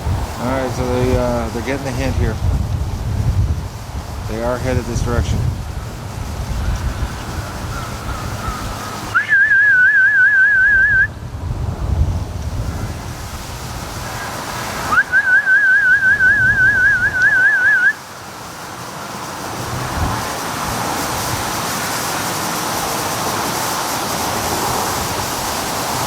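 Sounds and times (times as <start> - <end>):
wind on microphone: 0.0 - 9.4, 10.4 - 18.0, 19.5 - 22.0, 22.8 - 26.0
duck call whistle trill: 8.5 - 11.1, 14.9 - 18.0.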